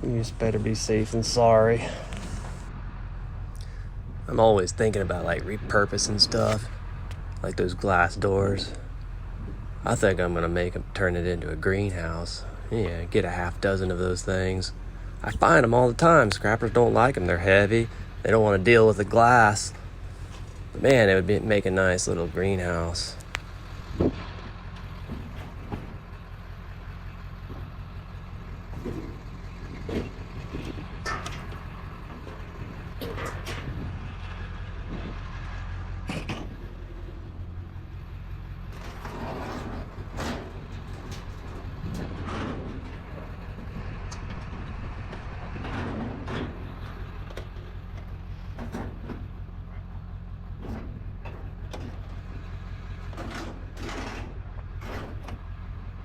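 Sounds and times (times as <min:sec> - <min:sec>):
vehicle engine humming: 0:00.0 - 0:56.0
knocks and rattles: 0:23.8 - 0:26.3, 0:27.4 - 0:55.7.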